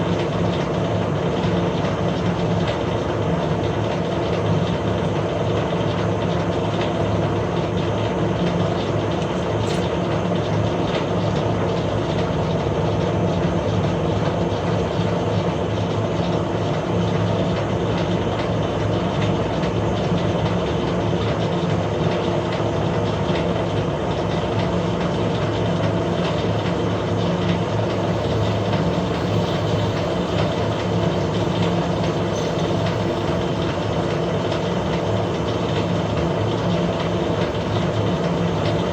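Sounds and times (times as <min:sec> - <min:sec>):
metal lathe humming: 0:25.7 - 0:38.9.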